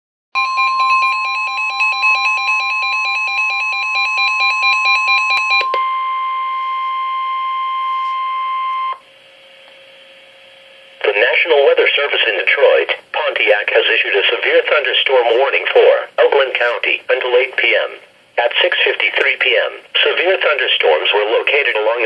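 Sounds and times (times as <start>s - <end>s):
warbling electronic alarm: 0.4s - 9.0s
faint radio hiss: 9.1s - 22.0s.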